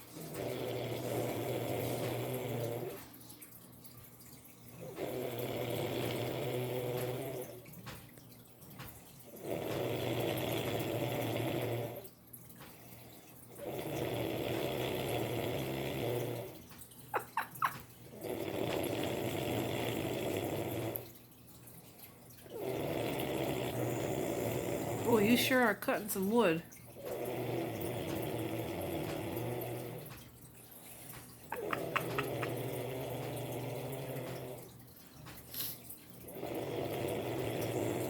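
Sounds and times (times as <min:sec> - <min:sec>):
loud snoring: 0:00.0 - 0:03.1, 0:04.8 - 0:07.6, 0:09.3 - 0:12.1, 0:13.5 - 0:16.6, 0:18.1 - 0:21.1, 0:22.5 - 0:25.4, 0:27.0 - 0:30.2, 0:31.5 - 0:34.8, 0:36.2 - 0:38.0.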